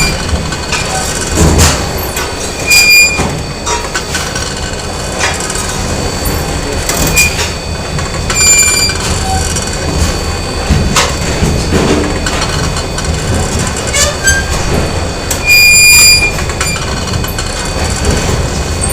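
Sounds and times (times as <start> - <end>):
factory machinery rumbling: 0.0 - 18.9
metal squeals and rings: 2.4 - 3.9, 7.0 - 11.9, 12.8 - 18.2.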